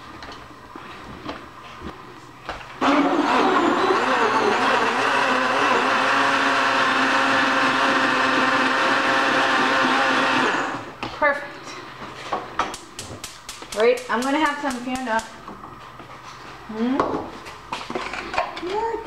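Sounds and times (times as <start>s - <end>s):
blender motor running: 2.8s - 10.9s.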